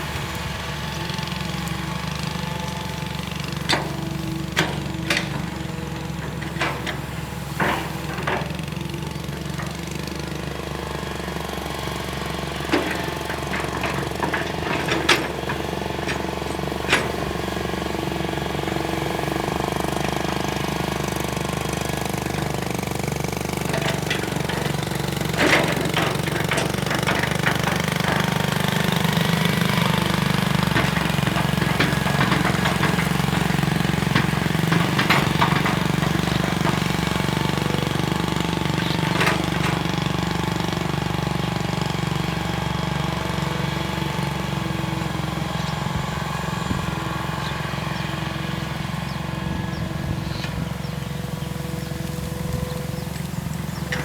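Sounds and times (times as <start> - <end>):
excavator diesel engine running: 0.0 - 54.0
sharp knocks and clatters: 19.5 - 41.0.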